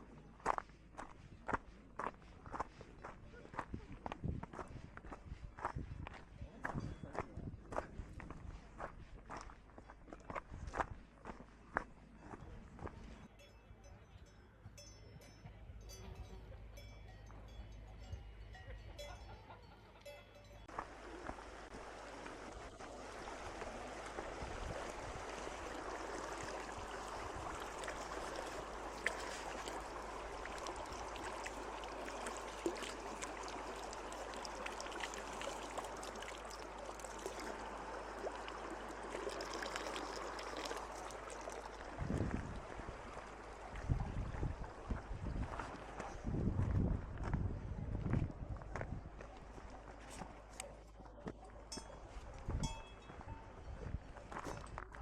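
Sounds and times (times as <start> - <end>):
stream rushing: 20.7 - 46.0.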